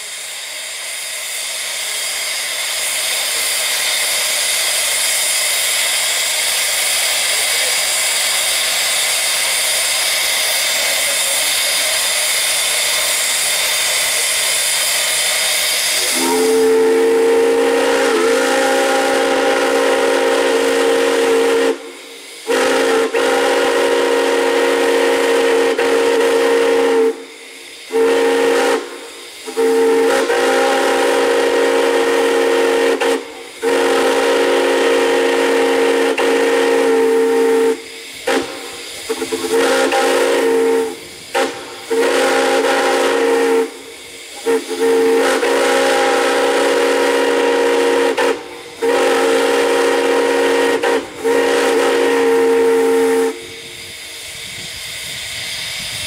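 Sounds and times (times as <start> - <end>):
chime steam whistle blasts: 0.0 - 56.0
steam hissing: 0.0 - 56.0.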